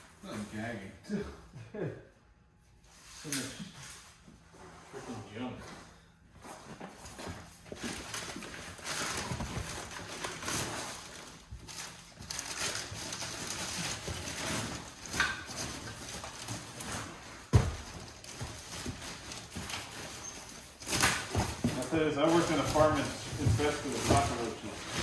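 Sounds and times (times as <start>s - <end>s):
rustling and scraping of debris: 6.4s - 25.0s.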